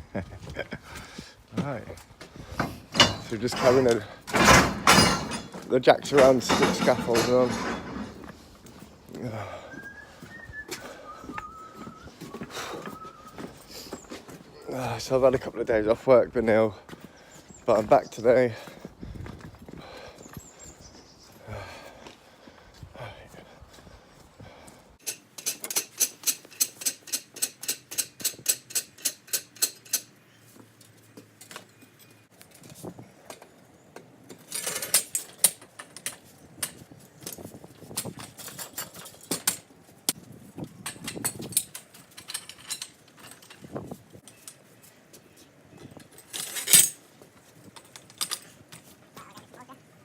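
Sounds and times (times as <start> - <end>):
metal scaffolding clanking: 2.6 - 8.3.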